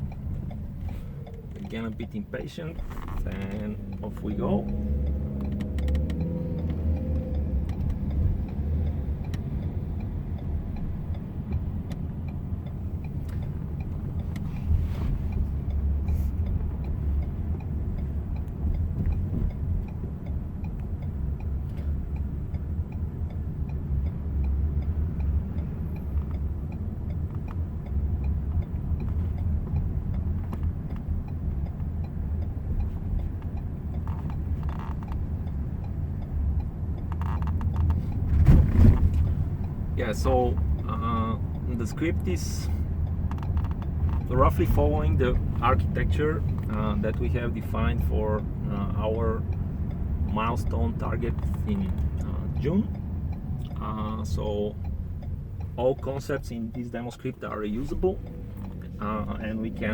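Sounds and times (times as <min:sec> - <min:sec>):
hazard lights ticking: 0:00.0 - 0:38.3, 0:39.2 - 0:59.9
road and engine rumble: 0:00.0 - 0:59.9.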